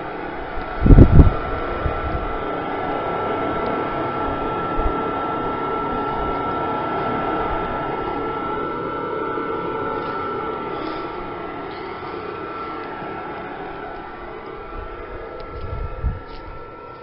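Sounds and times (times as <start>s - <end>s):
furnace exhaust whir: 0.0s - 17.0s
thin high whine: 0.0s - 17.0s.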